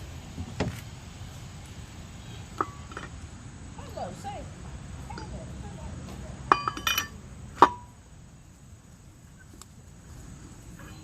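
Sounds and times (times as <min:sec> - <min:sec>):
lug nuts and wrench clinking: 0:02.5 - 0:03.2, 0:06.1 - 0:08.0.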